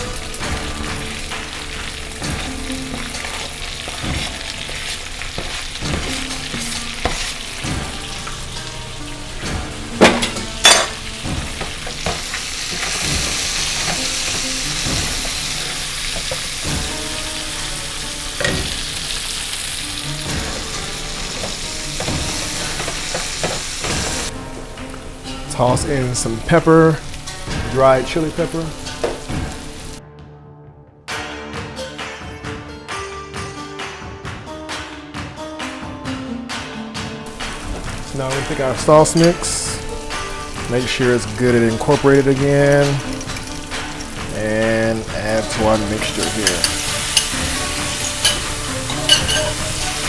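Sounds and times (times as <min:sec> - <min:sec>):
vegetables sizzling in hot oil: 0:00.0 - 0:24.3, 0:37.4 - 0:50.0
sharp loud knocks: 0:00.0 - 0:30.0, 0:31.1 - 0:50.0.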